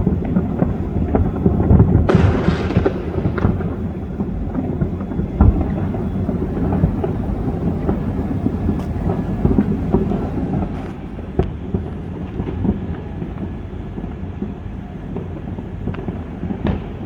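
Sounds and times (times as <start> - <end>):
fireworks booming rumble: 0.0 - 17.0
fireworks cracks and pops: 0.0 - 17.0.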